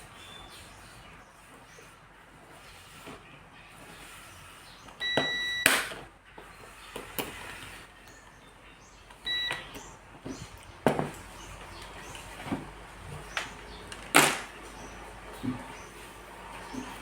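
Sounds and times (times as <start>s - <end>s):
electronic beeps: 5.0s - 5.9s, 9.2s - 10.0s.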